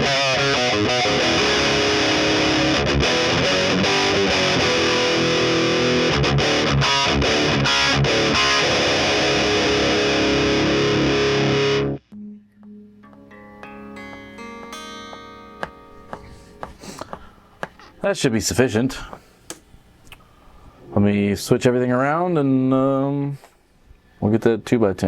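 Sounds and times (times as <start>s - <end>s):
distorted electric guitar riff: 0.0s - 16.7s.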